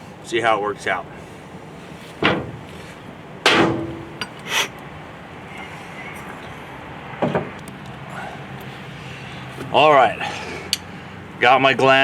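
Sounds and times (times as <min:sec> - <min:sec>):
sharp bang with ringing tone: 0:03.4 - 0:04.3.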